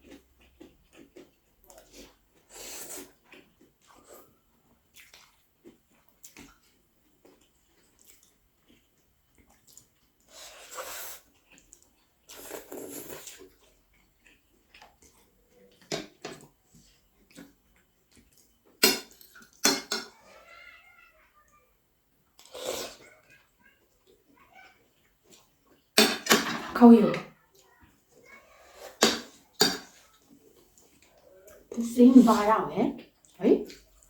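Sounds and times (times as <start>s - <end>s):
wet chewing: 0.0s - 20.4s, 22.3s - 26.2s, 27.4s - 34.0s
slurping: 9.5s - 15.9s, 22.4s - 23.6s.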